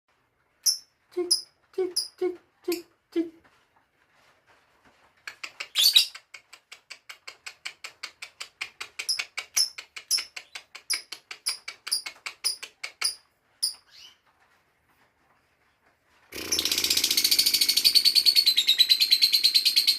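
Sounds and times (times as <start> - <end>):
lovebird chirping: 0.6 - 3.3, 5.7 - 6.2, 9.1 - 14.2, 16.5 - 19.9.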